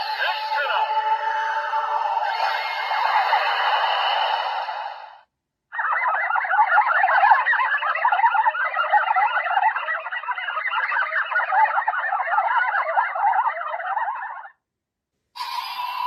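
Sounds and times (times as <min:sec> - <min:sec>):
fast warbling chirps from toy speaker: 0:05.7 - 0:14.6, 0:15.4 - 0:16.0.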